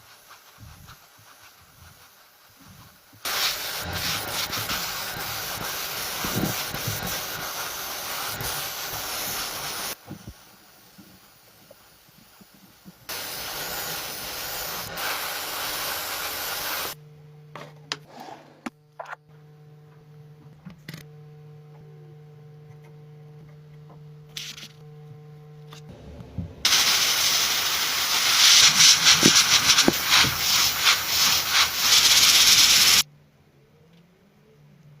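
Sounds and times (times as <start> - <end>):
paint spray hissing: 0.0 - 10.0, 13.1 - 17.0, 26.7 - 33.0.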